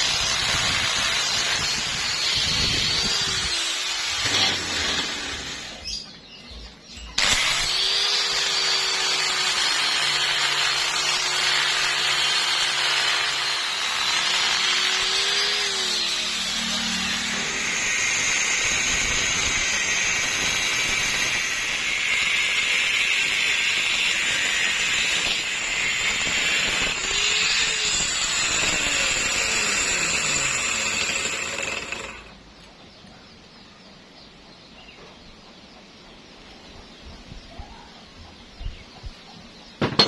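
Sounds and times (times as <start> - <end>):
power tool whining on metal: 0.0 - 6.0, 7.2 - 32.4.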